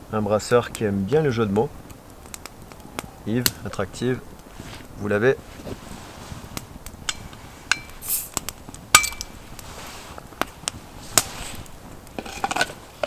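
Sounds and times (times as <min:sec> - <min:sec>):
small glass clinks: 0:07.1 - 0:08.0, 0:08.9 - 0:09.4
short hiss of gas: 0:08.0 - 0:08.4
bottle cap clinking on glass: 0:09.0 - 0:09.3
sharp ringing glass clink: 0:09.0 - 0:09.3.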